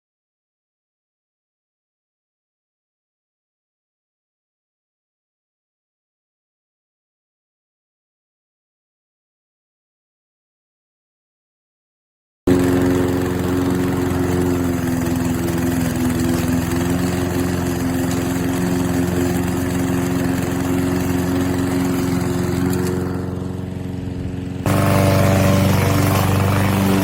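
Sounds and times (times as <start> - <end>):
lawn mower engine running: 12.5 - 27.0.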